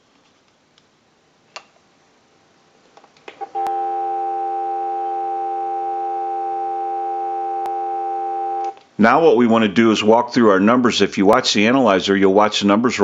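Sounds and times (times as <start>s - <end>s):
telephone dial tone: 3.6s - 8.8s.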